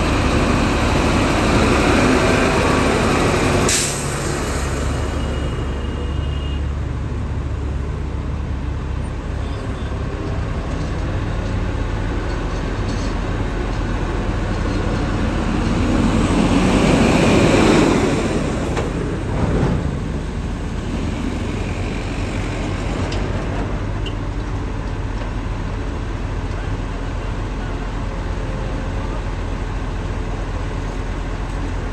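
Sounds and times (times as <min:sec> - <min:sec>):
heavy vehicle passing: 0:00.0 - 0:06.1, 0:13.2 - 0:24.0
road traffic rumble: 0:00.0 - 0:31.9.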